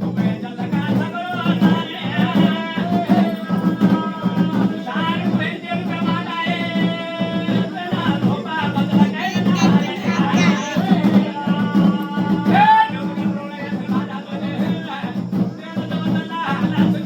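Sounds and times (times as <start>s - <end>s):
person singing with instruments: 7.8s - 12.6s.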